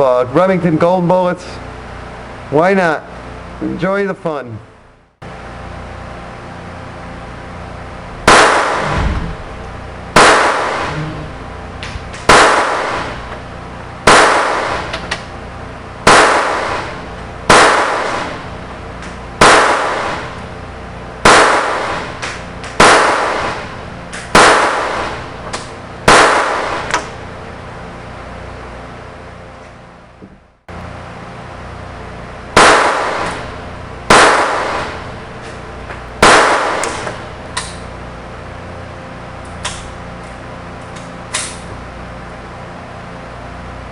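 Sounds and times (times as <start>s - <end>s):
pistol shots with echo: 8.2s - 9.3s, 10.2s - 11.0s, 12.3s - 13.3s, 14.1s - 15.1s, 16.1s - 18.5s, 19.4s - 20.4s, 21.2s - 22.2s, 22.8s - 25.3s, 26.1s - 27.0s, 32.6s - 33.5s, 34.1s - 35.1s, 36.2s - 37.2s.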